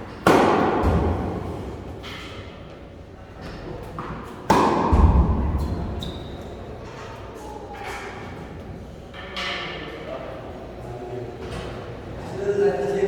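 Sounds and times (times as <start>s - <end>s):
deep thud: 4.9s - 6.0s.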